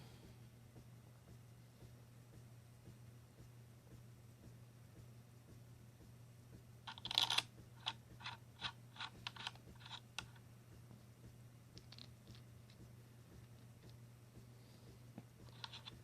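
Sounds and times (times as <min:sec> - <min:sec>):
small screws clicking and rattling: 0:06.9 - 0:10.4, 0:11.8 - 0:12.8, 0:15.4 - 0:16.0.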